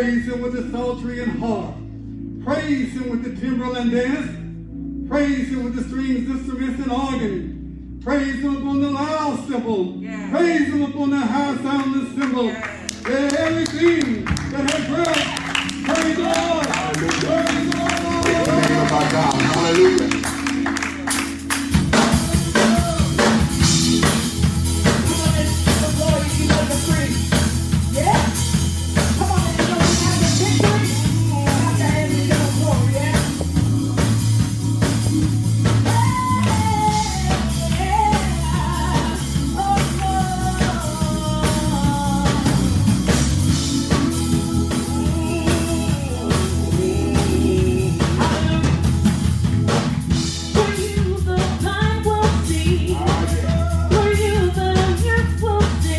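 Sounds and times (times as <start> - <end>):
bass: 0.0 - 55.9
gospel music: 0.0 - 55.9
drum kit beat: 13.0 - 55.9
person singing: 16.2 - 20.2, 21.9 - 24.1, 29.0 - 35.0, 35.7 - 49.0, 50.5 - 55.9.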